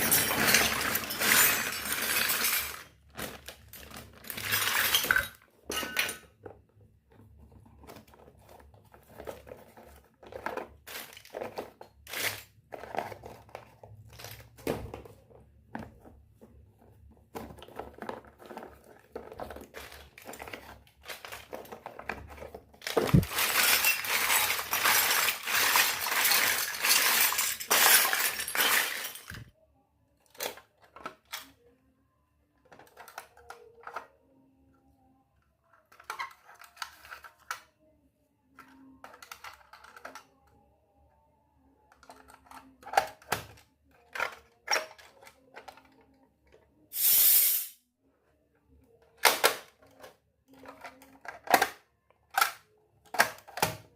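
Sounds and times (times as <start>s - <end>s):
plastic packaging crinkling: 17.7s - 29.5s.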